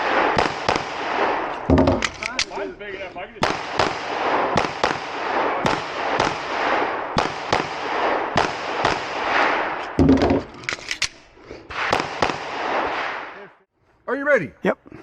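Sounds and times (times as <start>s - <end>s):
pistol shots with echo: 0.0s - 2.7s, 3.4s - 9.9s, 11.7s - 13.4s
heavy low thump: 1.6s - 2.2s.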